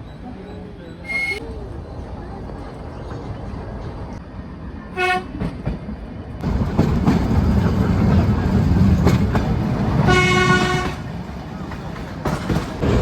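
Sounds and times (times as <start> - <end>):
train carriages clattering on rails: 5.2 - 13.0
steam locomotive whistle: 10.1 - 11.0.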